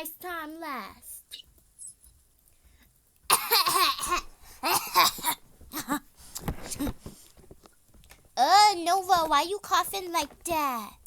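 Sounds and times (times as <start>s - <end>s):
girl coughing hard: 3.3s - 6.0s.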